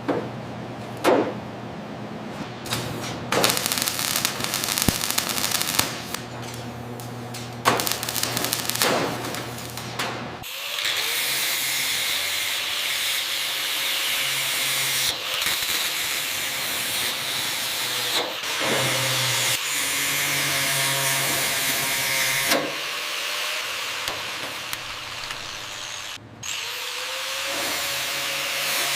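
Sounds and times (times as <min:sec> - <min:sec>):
loud hiss of blower: 0:02.4 - 0:06.3, 0:10.4 - 0:28.9.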